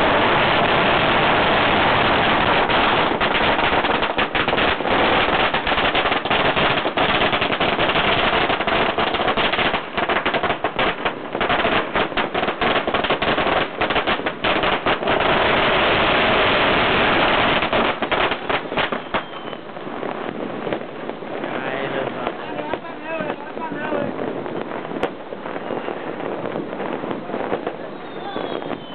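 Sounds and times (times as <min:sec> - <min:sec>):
firecrackers crackling: 0:00.0 - 0:28.9.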